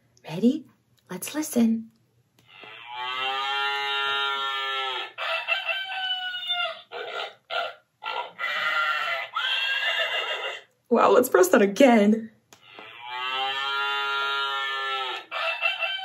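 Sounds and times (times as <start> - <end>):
recorded animal calls from speaker: 2.5 - 11.1, 12.6 - 16.0
rooster crowing: 2.9 - 7.0, 13.0 - 16.0.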